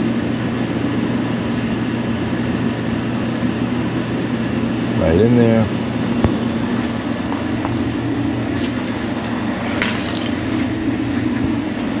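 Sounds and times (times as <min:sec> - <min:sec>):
low mechanical hum of machine: 0:00.0 - 0:12.0.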